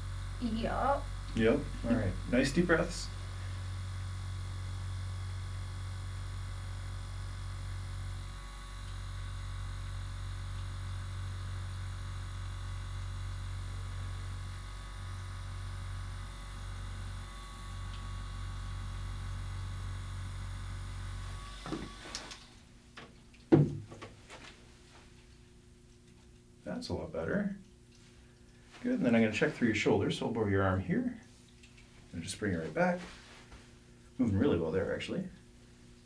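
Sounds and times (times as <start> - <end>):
percussion massager humming: 0.0 - 24.4.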